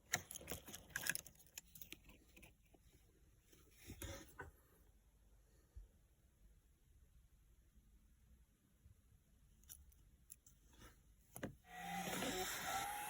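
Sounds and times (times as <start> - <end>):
rustling handling noises: 0.0 - 4.6.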